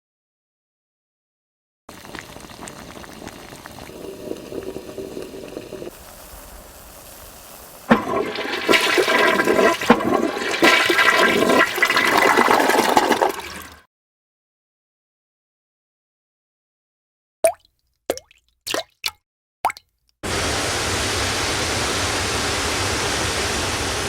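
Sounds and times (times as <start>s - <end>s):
toilet flushing: 1.9s - 13.8s.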